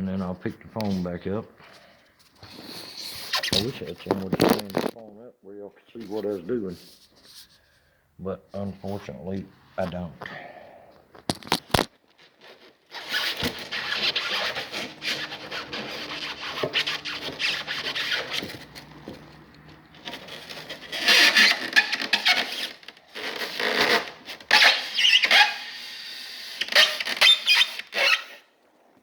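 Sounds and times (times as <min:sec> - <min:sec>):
styrofoam being cut: 0:12.4 - 0:28.5.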